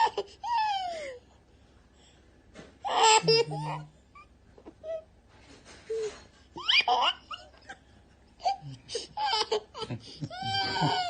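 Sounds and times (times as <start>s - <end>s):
child laughing hysterically: 9.0s - 11.0s.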